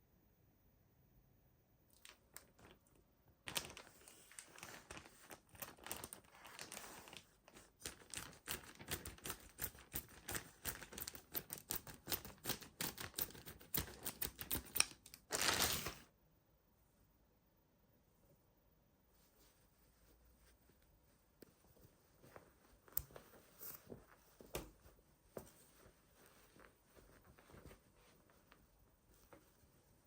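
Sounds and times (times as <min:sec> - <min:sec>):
packaging rustle: 0:02.0 - 0:16.0
plastic and cardboard crinkling: 0:02.0 - 0:16.0.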